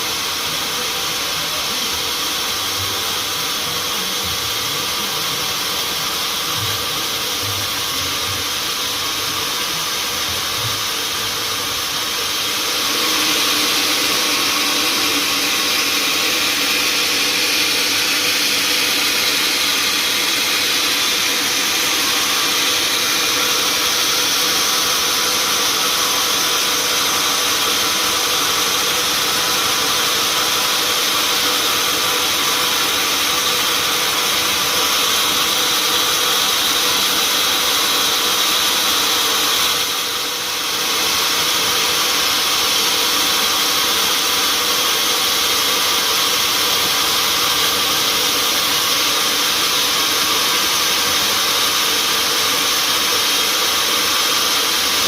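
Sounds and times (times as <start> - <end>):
sawmill machinery hiss: 0.0 - 55.0
machinery whining tones: 6.6 - 27.5.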